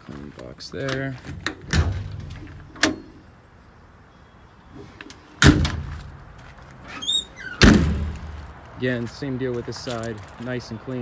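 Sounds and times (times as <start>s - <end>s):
compartment doors slamming: 1.0s - 3.2s, 5.4s - 6.3s, 6.9s - 8.5s
short squeak: 6.9s - 7.6s.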